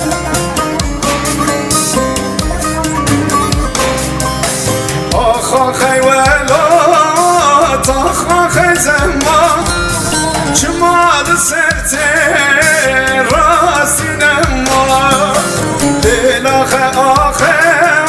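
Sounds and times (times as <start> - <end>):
instrumental backing: 0.0 - 18.0
person singing with vibrato: 5.1 - 18.0.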